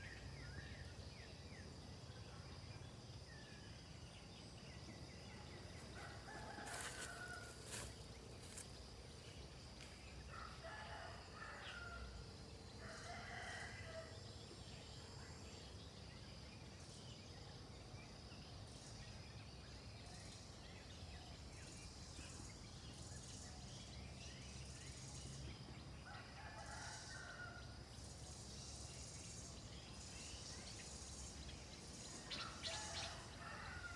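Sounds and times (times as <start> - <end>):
roosters crowing: 6.0 - 7.7, 32.4 - 33.9.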